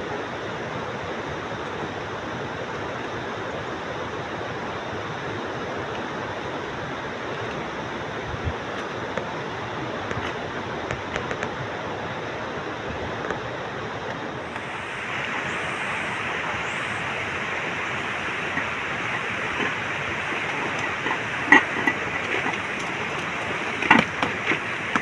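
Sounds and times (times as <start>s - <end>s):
steady rushing noise: 14.1s - 25.0s.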